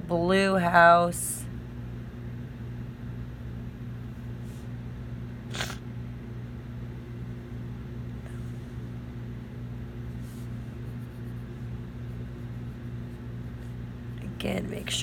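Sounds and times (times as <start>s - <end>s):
low electrical hum: 0.0s - 15.0s
brief hiss: 5.5s - 5.8s.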